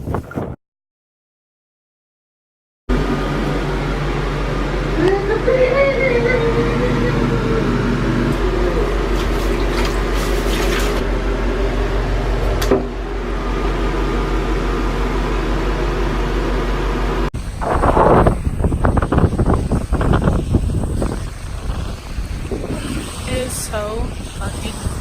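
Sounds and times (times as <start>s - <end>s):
wind buffeting microphone: 0.0s - 0.6s, 17.4s - 25.0s
mechanical hum: 2.9s - 25.0s.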